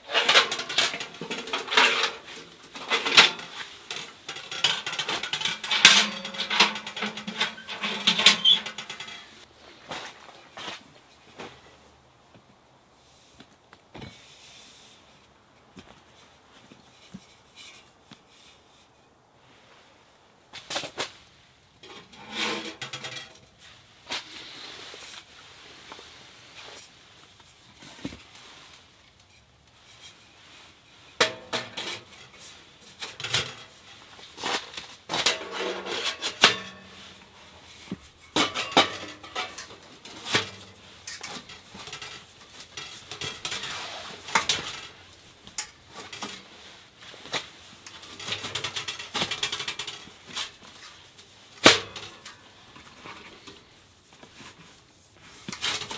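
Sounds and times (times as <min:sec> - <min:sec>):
pots and pans clattering: 0:00.0 - 0:09.4, 0:21.8 - 0:23.4, 0:31.2 - 0:46.7, 0:47.9 - 0:50.6, 0:51.6 - 0:53.6, 0:55.4 - 0:55.9.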